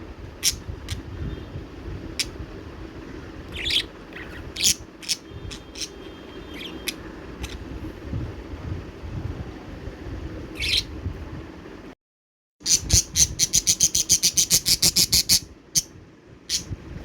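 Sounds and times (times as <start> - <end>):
low background hum: 0.0 - 12.0, 12.6 - 17.0
budgerigar chirping: 3.5 - 7.6, 10.6 - 10.9, 12.6 - 15.9, 16.5 - 16.7.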